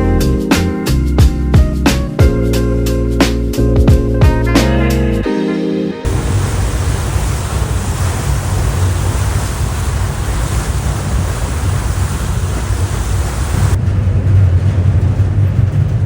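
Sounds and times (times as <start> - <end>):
background music: 0.0 - 6.1
low continuous rumble: 6.1 - 16.0
wind on microphone: 6.1 - 16.0.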